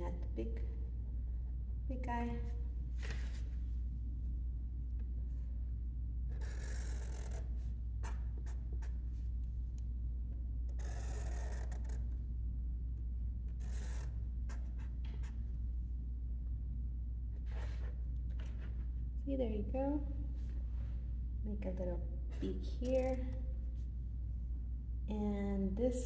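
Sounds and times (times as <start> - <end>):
steady low hum: 0.0 - 26.0
marker scratching on paper: 6.3 - 9.4, 10.7 - 12.2, 13.5 - 15.6, 17.4 - 18.6, 22.3 - 23.9.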